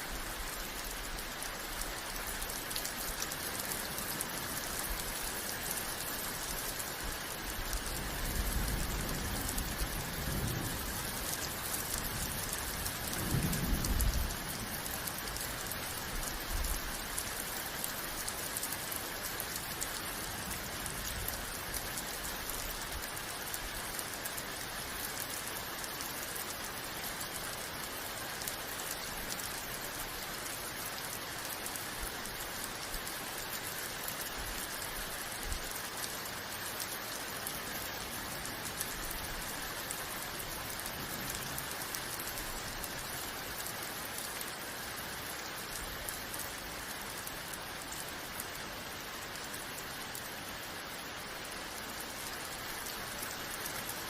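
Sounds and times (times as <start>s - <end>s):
steady rain hissing: 0.0s - 54.0s
thunder rumbles: 8.3s - 15.2s.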